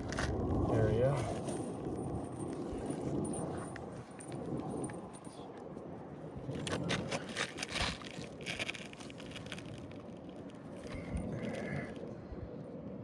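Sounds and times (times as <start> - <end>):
roof shingles scraping: 6.7 - 10.0.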